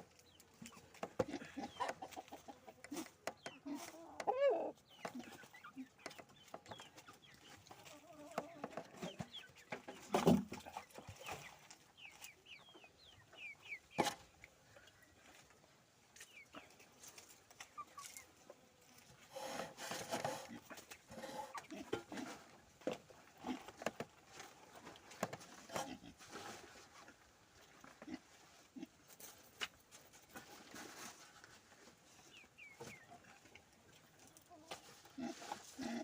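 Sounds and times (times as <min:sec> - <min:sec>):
chickens clucking: 0:00.0 - 0:36.0.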